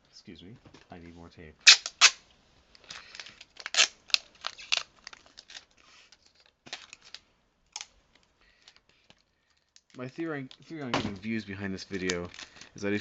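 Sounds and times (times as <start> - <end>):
adhesive tape ripping: 1.6 - 2.2, 3.4 - 5.7.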